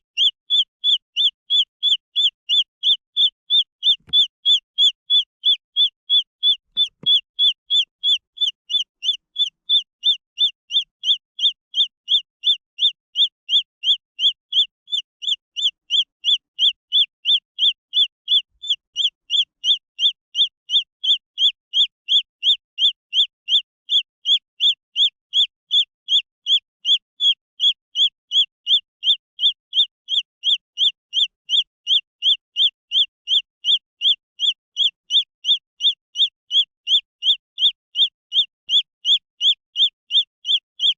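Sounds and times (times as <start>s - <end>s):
chick peeping: 0.1s - 40.9s.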